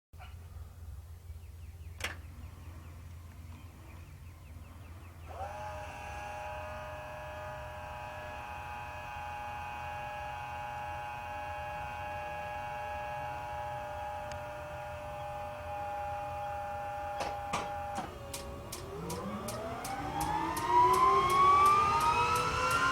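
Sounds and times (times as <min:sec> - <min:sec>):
starter rising whine: 0:01.9 - 0:22.9
electrical whine: 0:11.8 - 0:22.9.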